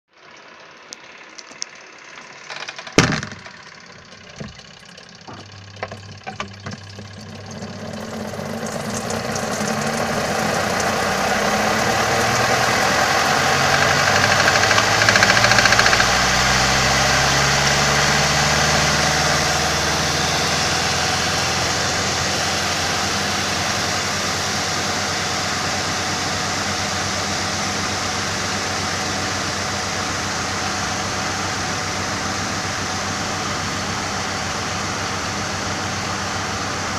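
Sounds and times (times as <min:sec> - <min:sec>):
washing machine spinning: 0:00.3 - 0:36.9
loud knock: 0:02.6 - 0:03.6.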